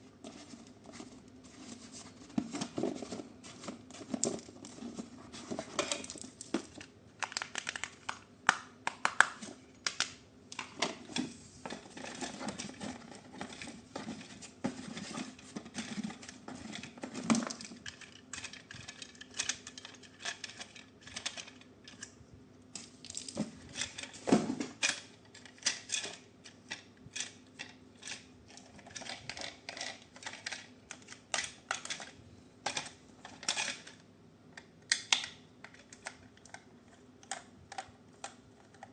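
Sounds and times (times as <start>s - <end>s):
plastic and cardboard crinkling: 0.2s - 8.2s, 9.0s - 22.0s.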